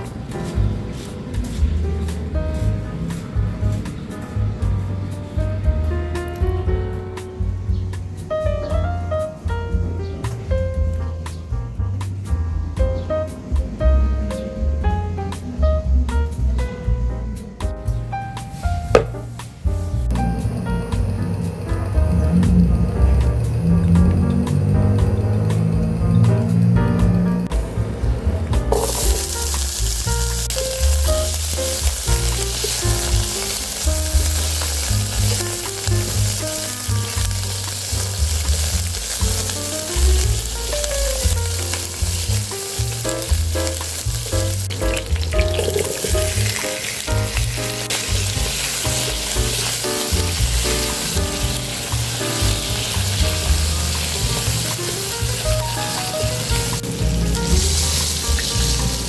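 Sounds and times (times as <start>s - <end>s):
background music: 0.0s - 59.0s
food sizzling in hot oil: 19.9s - 59.0s.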